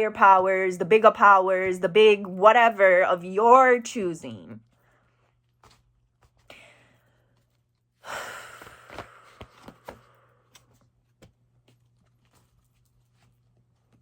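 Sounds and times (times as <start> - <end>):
person sighing: 8.0 - 9.5
person breathing in: 8.0 - 10.6.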